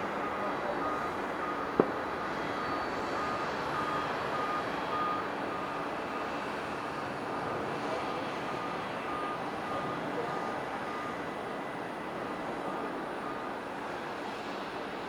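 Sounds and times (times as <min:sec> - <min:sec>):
jet aircraft noise: 0:00.0 - 0:15.0
short beeps: 0:00.2 - 0:01.9, 0:02.5 - 0:05.8, 0:08.5 - 0:11.2.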